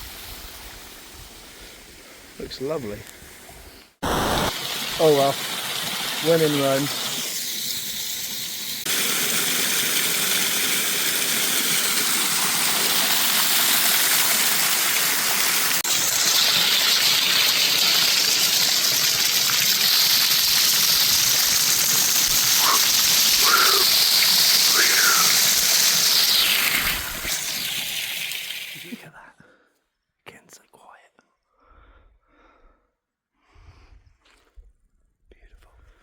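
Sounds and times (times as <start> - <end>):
small waterfall splashing: 4.0 - 29.0
faint short calls: 22.6 - 25.6.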